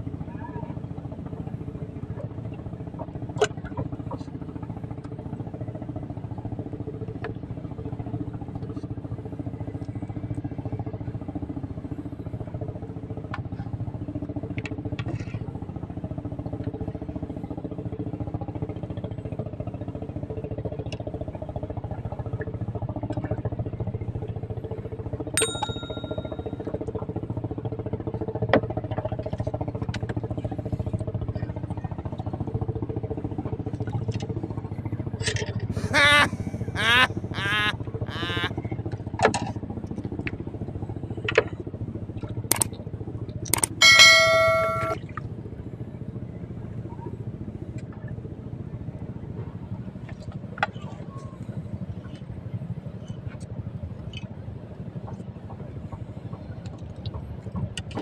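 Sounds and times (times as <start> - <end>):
short ding: 25.4 - 26.6, 43.6 - 45.0.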